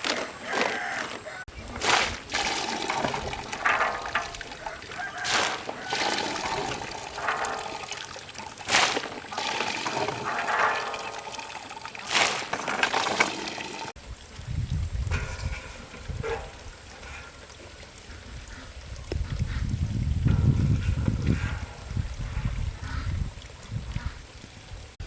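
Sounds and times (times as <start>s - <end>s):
water splashing: 0.0s - 14.4s
water sloshing and rustling: 0.0s - 25.0s.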